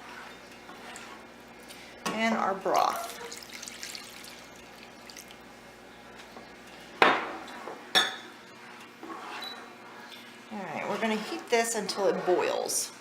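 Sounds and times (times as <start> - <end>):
liquid pouring and stirring: 2.7 - 5.5.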